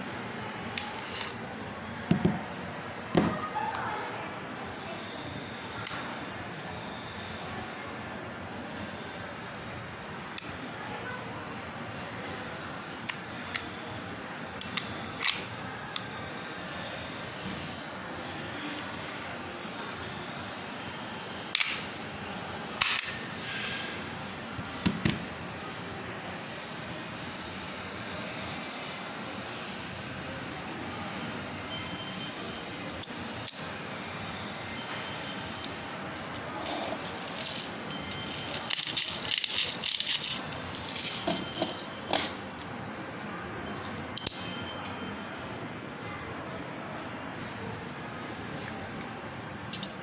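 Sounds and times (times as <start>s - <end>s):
pistol clicks: 21.6s - 21.9s, 22.8s - 23.1s
airsoft pistol rattling: 36.6s - 42.3s.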